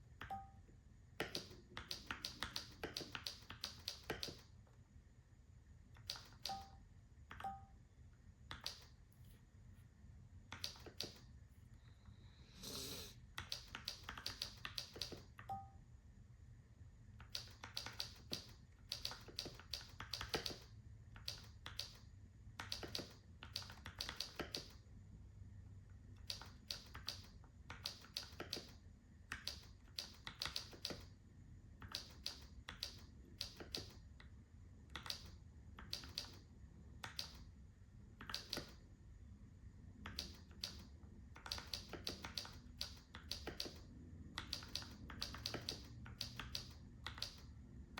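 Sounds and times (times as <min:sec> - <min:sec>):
mechanical keyboard typing: 0:01.2 - 0:04.5, 0:06.0 - 0:06.7, 0:08.5 - 0:08.9, 0:10.5 - 0:11.3, 0:13.4 - 0:15.6, 0:17.2 - 0:22.0, 0:22.6 - 0:24.8, 0:26.2 - 0:31.1, 0:31.8 - 0:34.0, 0:34.9 - 0:36.4, 0:37.0 - 0:37.4, 0:38.2 - 0:38.8, 0:40.1 - 0:47.5.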